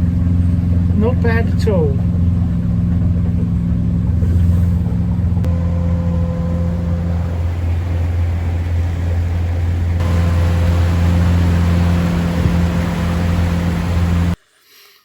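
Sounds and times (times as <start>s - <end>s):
boat engine running: 0.0s - 14.4s
rushing water noise: 5.4s - 14.4s.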